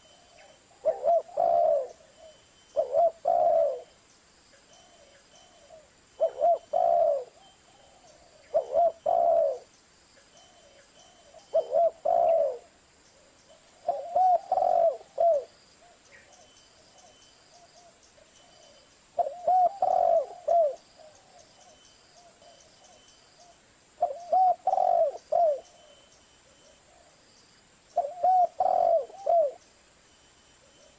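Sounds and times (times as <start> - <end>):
dove cooing: 0.0 - 3.9, 4.8 - 9.7, 10.4 - 27.2, 28.0 - 29.6.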